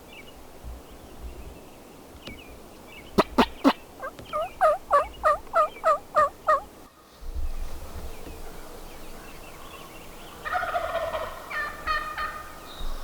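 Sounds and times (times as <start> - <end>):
wild turkey calling: 3.2 - 6.9, 10.4 - 12.6.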